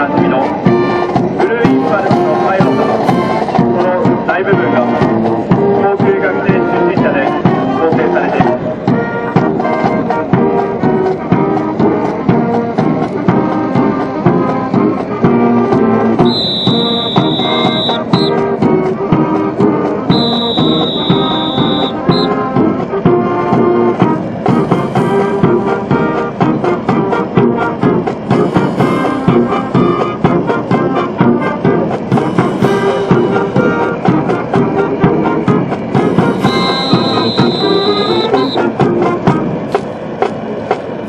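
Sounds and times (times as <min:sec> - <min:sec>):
brass band playing a march: 0:00.0 - 0:39.8
long high steady tone: 0:16.2 - 0:19.4, 0:20.1 - 0:22.6, 0:31.6 - 0:39.4.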